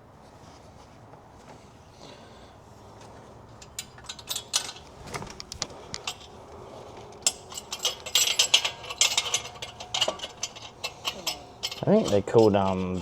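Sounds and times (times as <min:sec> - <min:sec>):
metal clamp clicking and rattling: 0:03.6 - 0:06.4, 0:07.2 - 0:13.0.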